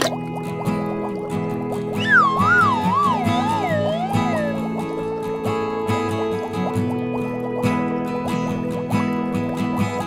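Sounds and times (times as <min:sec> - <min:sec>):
background music with beat: 0:00.0 - 0:10.0
short rising blips: 0:02.0 - 0:05.0.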